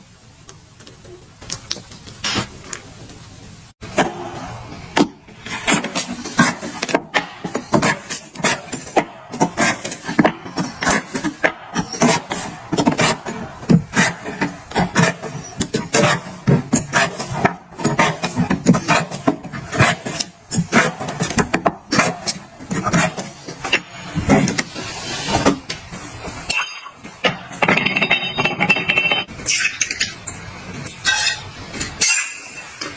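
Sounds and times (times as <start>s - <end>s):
hands rubbing and scraping hose: 5.3s - 28.1s.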